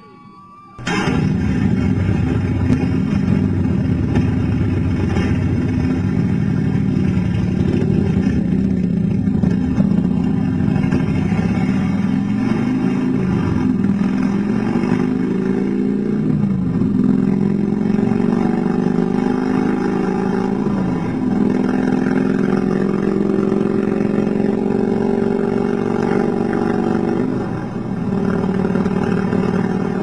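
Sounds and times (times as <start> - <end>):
motorcycle engine accelerating: 0.8 - 30.0.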